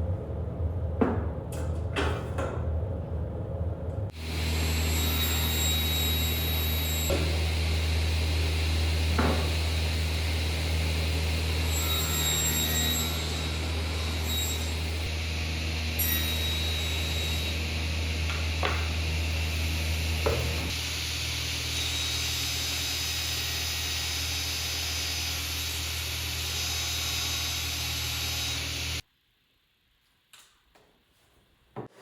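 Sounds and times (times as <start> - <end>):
power tool cutting wood: 4.1 - 29.0.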